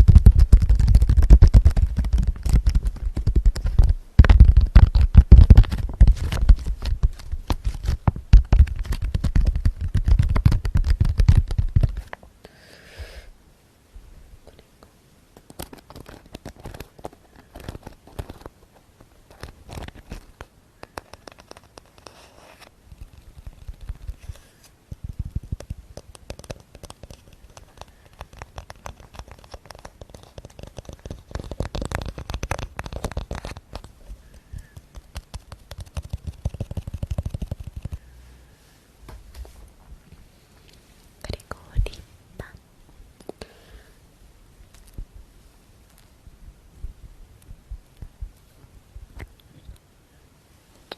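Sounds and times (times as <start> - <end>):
scratching close to microphone: 0.0 - 12.3, 15.4 - 38.2, 39.1 - 40.4, 44.6 - 49.8
tapping close to microphone: 0.0 - 12.3, 15.4 - 38.0.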